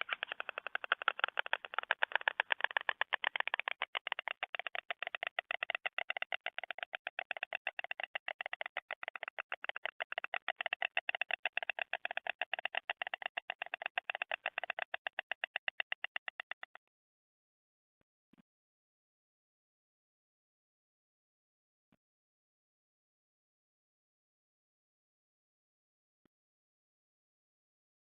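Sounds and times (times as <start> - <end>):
storks bill-clattering: 0.0 - 15.2.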